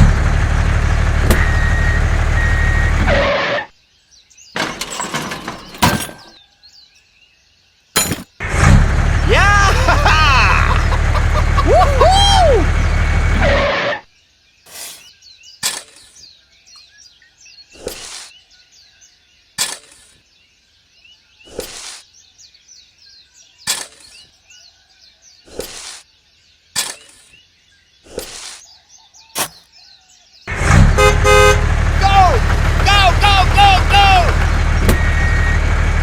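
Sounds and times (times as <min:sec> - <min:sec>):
small birds chirping: 0:03.8 - 0:08.4, 0:14.1 - 0:30.5
sharp taps or scrapes: 0:14.7 - 0:16.2, 0:17.8 - 0:18.3, 0:21.5 - 0:22.0, 0:23.7 - 0:24.2, 0:25.5 - 0:26.0, 0:26.8 - 0:27.3, 0:28.1 - 0:28.6, 0:29.4 - 0:29.6.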